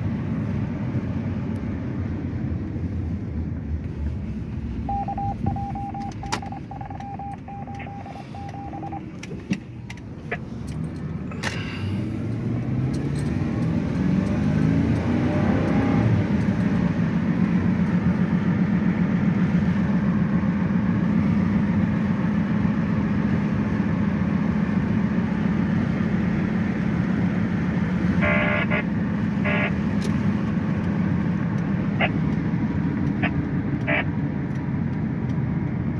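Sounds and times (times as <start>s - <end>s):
truck engine accelerating: 0.0s - 35.9s
chime beeping: 4.9s - 9.0s.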